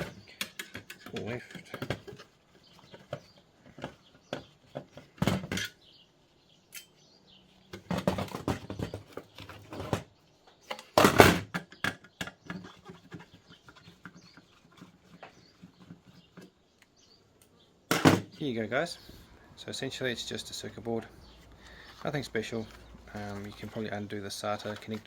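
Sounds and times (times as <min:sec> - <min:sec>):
scraping rattling handling noise: 0:17.9 - 0:25.0.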